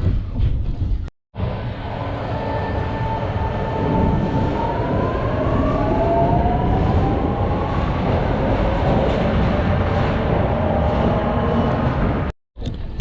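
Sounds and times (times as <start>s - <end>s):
train rumbling on rails: 0.0s - 12.3s.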